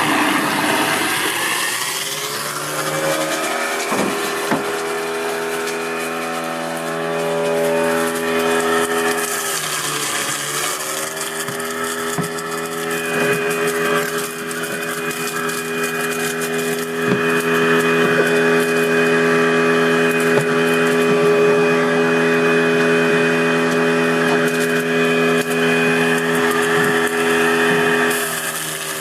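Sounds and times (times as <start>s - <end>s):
apple pieces grinding rattle: 0.0s - 29.0s
garbage disposal motor hum: 0.0s - 29.0s
sharp knocks: 3.9s - 4.8s.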